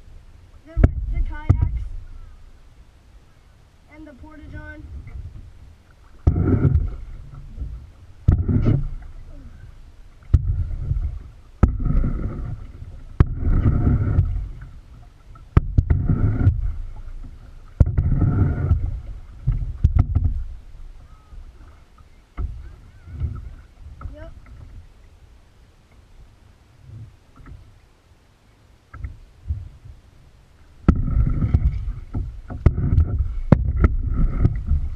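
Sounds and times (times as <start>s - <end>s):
kayak paddle splashing: 0.0s - 27.9s, 28.8s - 34.9s
water washing: 3.9s - 24.9s, 30.8s - 34.9s.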